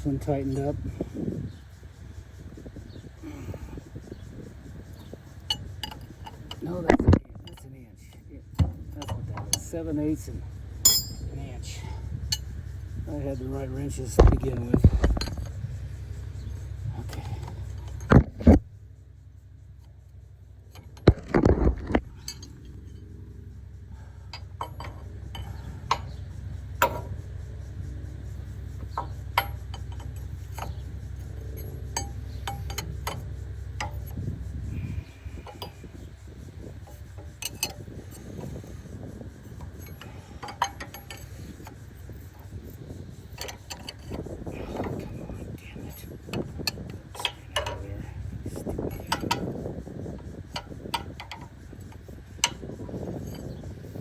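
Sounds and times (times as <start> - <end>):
low steady hum: 0.0 - 54.0
wrenches clinking on metal: 8.6 - 11.5, 24.3 - 26.1, 28.9 - 34.2, 35.3 - 36.0, 36.8 - 54.0.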